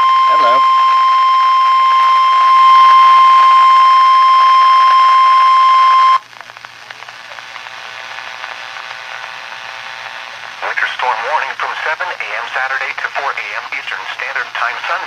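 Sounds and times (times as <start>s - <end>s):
faint radio hiss: 0.0s - 1.2s, 1.9s - 15.0s
weather radio alarm tone: 0.0s - 6.2s.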